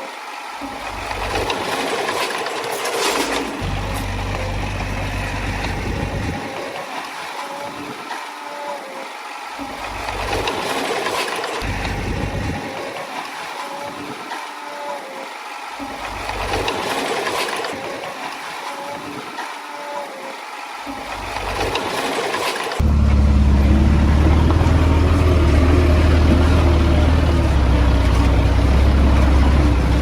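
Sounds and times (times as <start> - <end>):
bulldozer diesel engine running: 0.7 - 1.8, 3.4 - 6.5, 11.6 - 12.6, 22.6 - 30.0.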